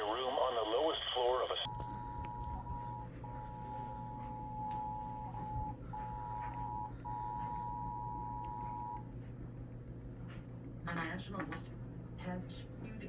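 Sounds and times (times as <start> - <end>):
faint low hum: 0.0 - 13.0.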